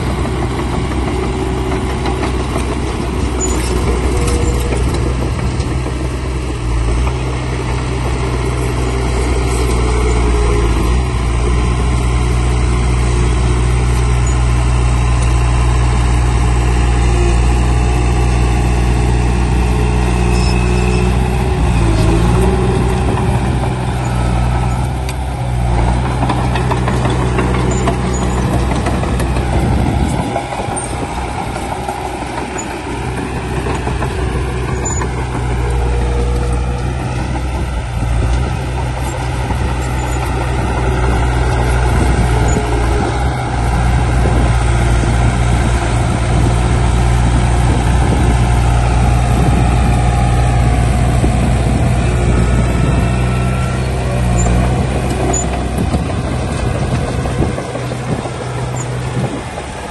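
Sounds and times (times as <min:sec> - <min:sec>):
heavy machinery diesel engine running: 0:00.0 - 0:59.9.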